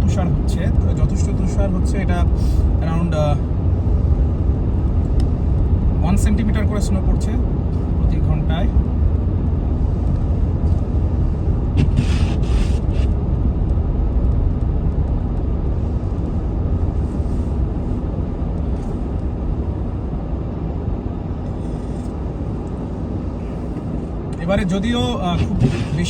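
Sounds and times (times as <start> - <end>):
car driving rumble: 0.0 - 26.0
short hiss: 11.8 - 13.1.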